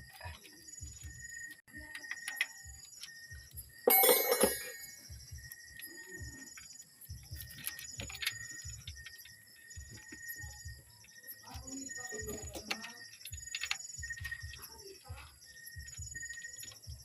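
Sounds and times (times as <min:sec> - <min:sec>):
birds chirping: 0:00.0 - 0:17.0
metal parts clattering: 0:03.9 - 0:05.0.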